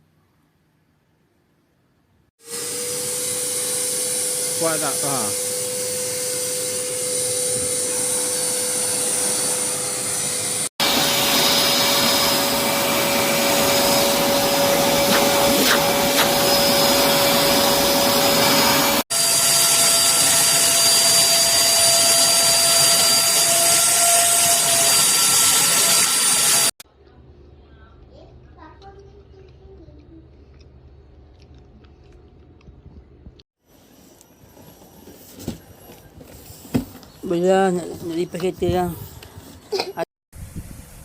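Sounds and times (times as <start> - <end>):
vacuum cleaner running: 2.4 - 26.8.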